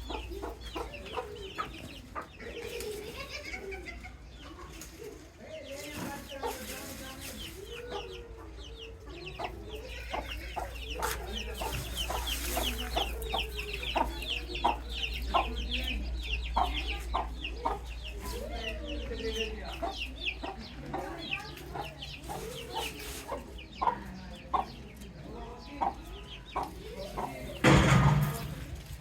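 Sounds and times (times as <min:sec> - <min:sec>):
low clucking calls: 0:00.0 - 0:04.3
chicks peeping: 0:00.0 - 0:29.0.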